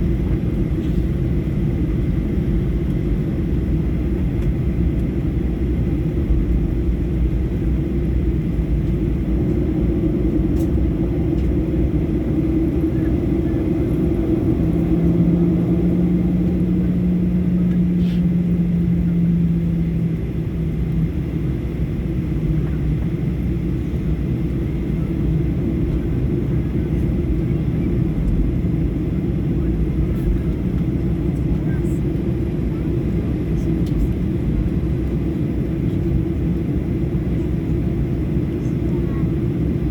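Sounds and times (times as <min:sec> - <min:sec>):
jet engines rumbling: 0:00.0 - 0:39.9.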